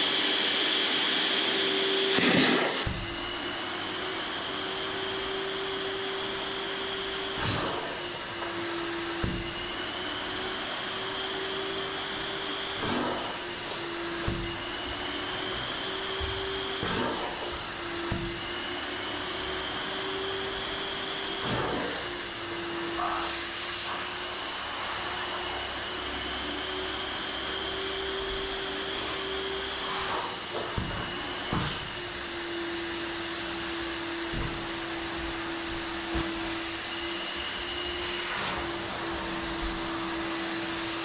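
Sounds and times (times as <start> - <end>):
electric motor whining: 0.1 - 23.4, 24.0 - 41.0.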